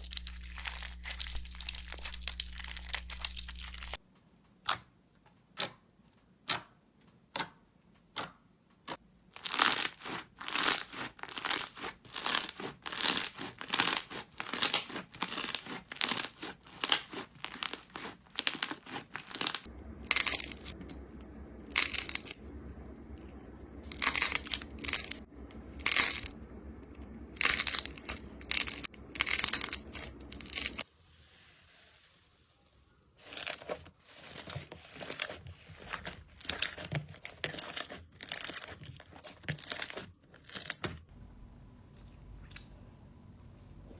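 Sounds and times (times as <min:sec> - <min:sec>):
slime crackling and popping: 0:00.0 - 0:04.0, 0:09.4 - 0:20.7.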